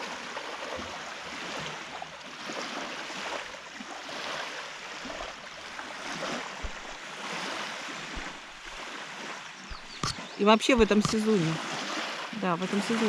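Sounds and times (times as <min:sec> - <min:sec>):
water lapping at shore: 0:00.0 - 0:13.0
low thumps: 0:06.6 - 0:07.1, 0:08.1 - 0:08.8.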